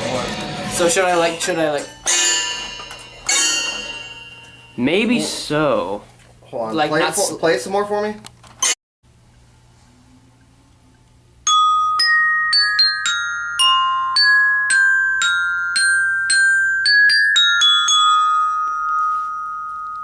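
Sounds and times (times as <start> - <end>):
glockenspiel melody: 0.2 - 5.6, 11.5 - 20.0.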